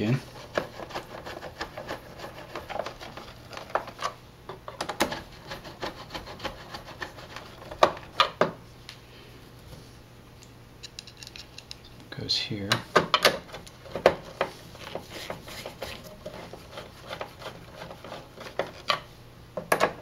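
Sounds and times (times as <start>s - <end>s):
quiet rubbing: 14.2s - 18.9s.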